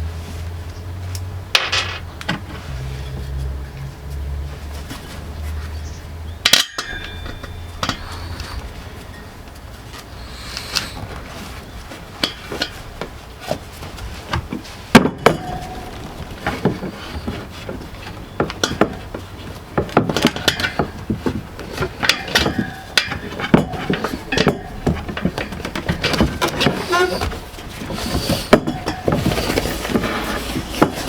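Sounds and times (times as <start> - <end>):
hand tools and metal parts clinking: 1.1 - 2.7, 5.8 - 31.0.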